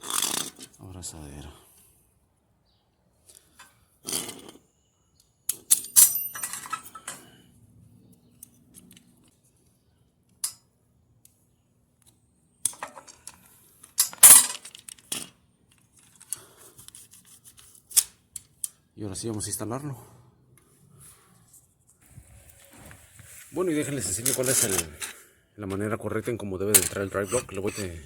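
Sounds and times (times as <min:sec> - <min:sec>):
metal parts clinking: 0:05.5 - 0:07.3, 0:12.6 - 0:16.4, 0:24.1 - 0:25.2.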